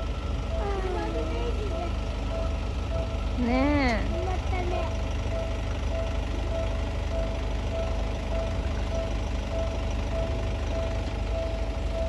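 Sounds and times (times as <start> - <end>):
level-crossing alarm ringing: 0.0 - 12.0
steady low rumble: 0.0 - 12.0.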